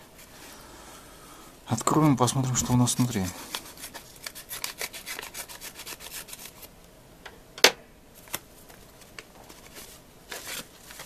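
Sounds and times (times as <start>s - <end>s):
packaging rustling and scraping: 8.2s - 11.0s.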